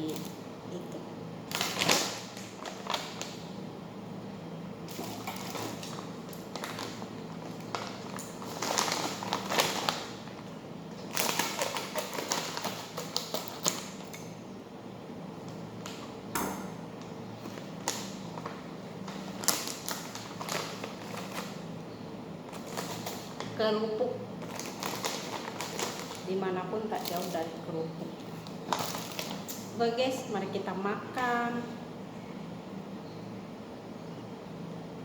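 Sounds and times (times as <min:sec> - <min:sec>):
plastic packaging handled: 0:01.5 - 0:03.4, 0:04.8 - 0:14.2, 0:17.4 - 0:21.6, 0:22.4 - 0:23.6, 0:24.4 - 0:29.6.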